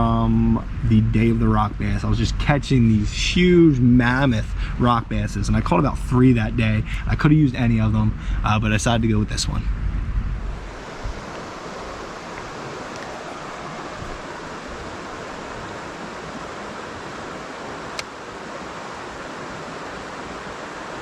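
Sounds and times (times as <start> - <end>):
creek water flowing over rocks: 10.6 - 21.0.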